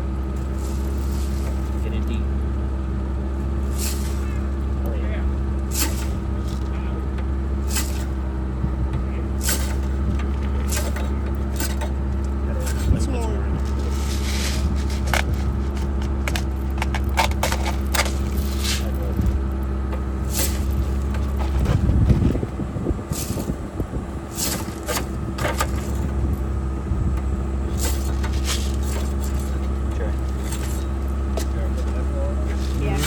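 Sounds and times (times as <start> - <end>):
car engine running with knock: 0.0 - 33.0.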